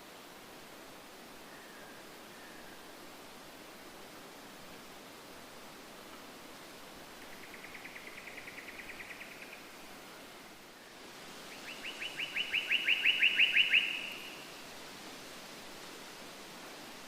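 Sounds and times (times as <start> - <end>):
steady background hiss: 0.0 - 17.0
bird trilling: 11.7 - 14.4.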